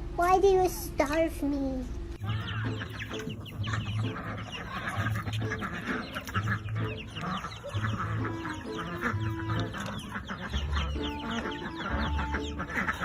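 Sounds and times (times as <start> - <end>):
chickens clucking: 2.2 - 13.0.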